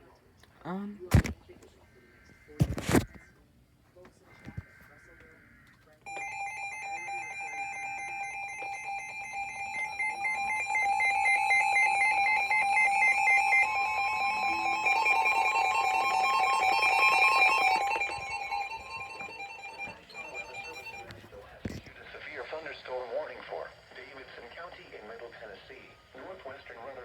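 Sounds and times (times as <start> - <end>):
fast pulsing alarm: 6.1 - 21.4
steady electronic alarm tones: 6.1 - 26.4.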